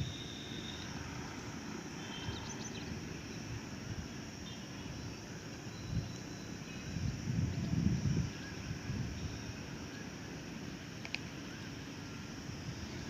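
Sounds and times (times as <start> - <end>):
faint bird chirps: 0.0 - 1.0, 2.0 - 3.4, 4.4 - 10.1.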